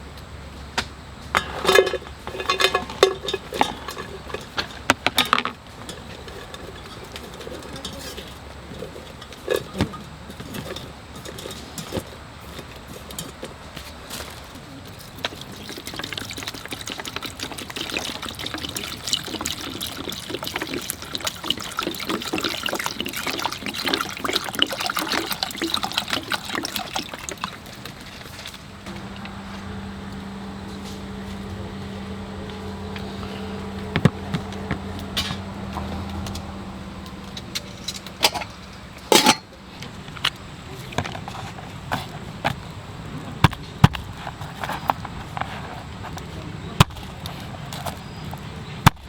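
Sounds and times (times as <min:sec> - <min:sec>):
liquid trickling and pouring: 0:14.8 - 0:36.6
steady low hum: 0:28.7 - 0:40.2.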